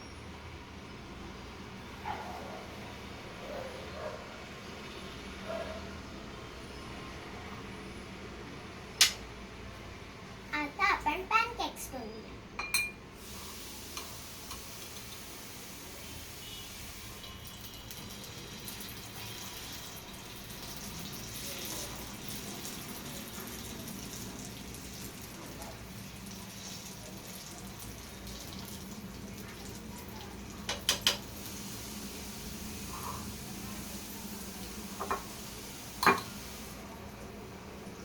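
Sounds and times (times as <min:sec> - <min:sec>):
batter sizzling in a frying pan: 0:13.2 - 0:38.0.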